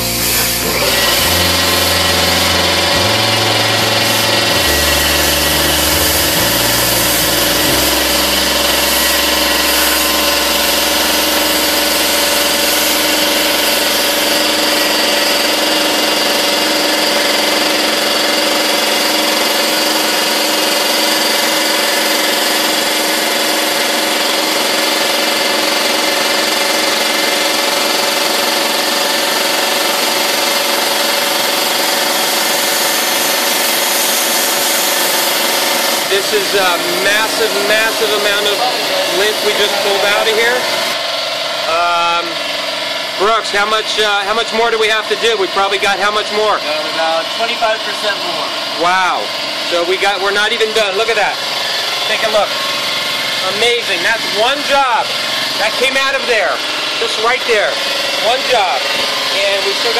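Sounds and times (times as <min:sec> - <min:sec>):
background music: 0:00.0 - 0:14.5
motor running with air hiss: 0:00.0 - 0:59.9.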